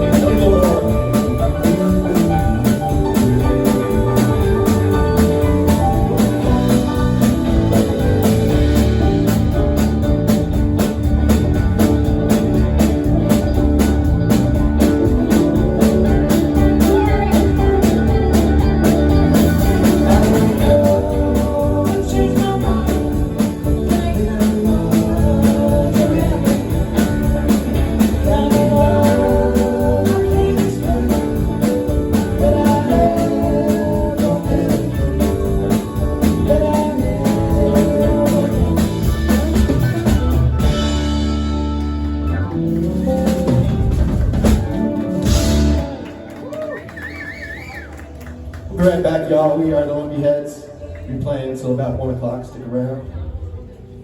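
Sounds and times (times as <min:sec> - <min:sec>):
person singing: 0:00.0 - 0:07.3, 0:16.5 - 0:40.4
live band playing: 0:00.0 - 0:49.4.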